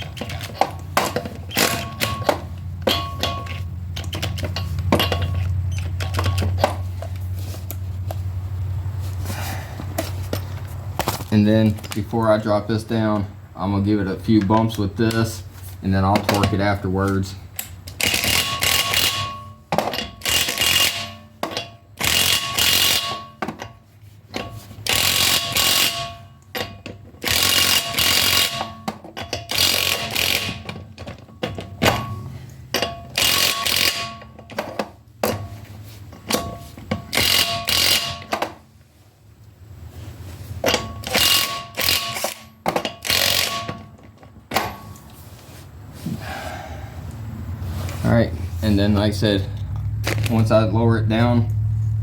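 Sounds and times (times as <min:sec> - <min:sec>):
impact wrench bursts: 0:00.0 - 0:06.8, 0:17.8 - 0:23.7, 0:24.4 - 0:38.6, 0:40.6 - 0:44.8.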